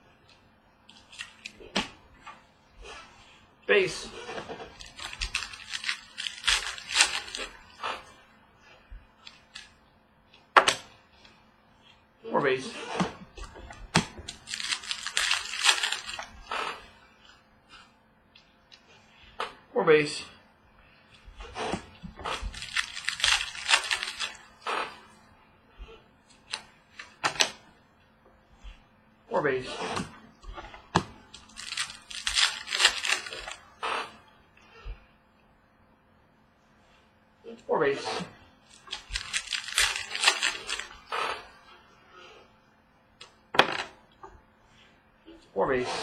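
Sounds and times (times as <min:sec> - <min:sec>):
trading cards rustling: 0:04.0 - 0:07.7, 0:13.9 - 0:16.5, 0:21.7 - 0:24.6, 0:31.3 - 0:33.7, 0:38.6 - 0:41.1.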